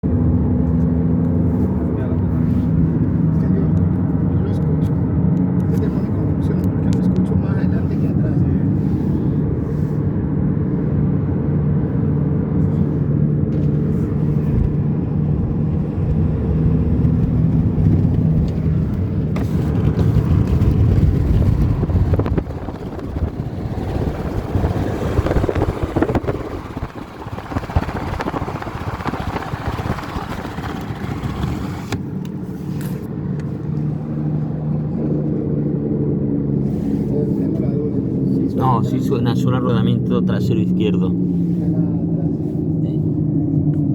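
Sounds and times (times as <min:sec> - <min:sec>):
car cabin hum and road noise: 0:00.0 - 0:43.9
broad rushing noise: 0:07.5 - 0:43.9
wheel bearing drone: 0:08.7 - 0:38.4.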